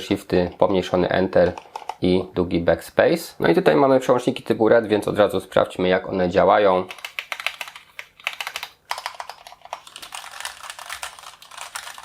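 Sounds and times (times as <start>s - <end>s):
mechanical keyboard typing: 6.9s - 12.0s.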